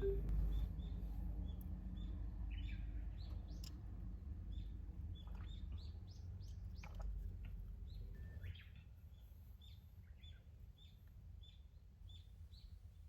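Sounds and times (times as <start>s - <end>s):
faint low rumble: 0.0s - 1.6s.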